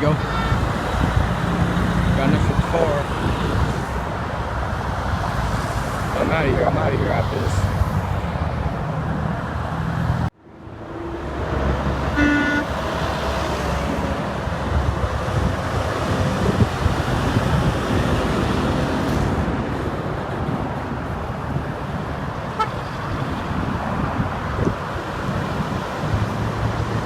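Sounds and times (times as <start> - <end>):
highway traffic rushing past: 0.0 - 27.0
car horn honk: 12.1 - 12.8, 22.5 - 23.0.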